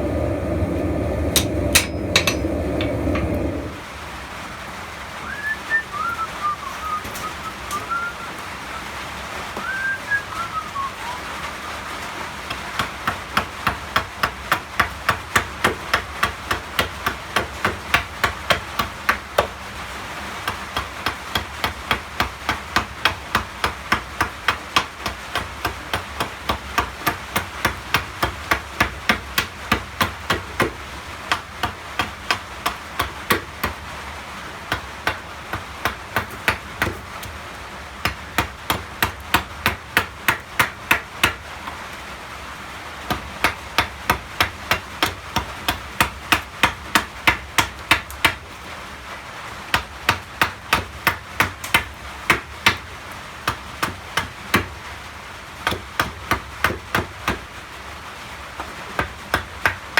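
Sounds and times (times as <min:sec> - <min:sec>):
hammer striking steel on anvil: 0:01.1 - 0:03.7.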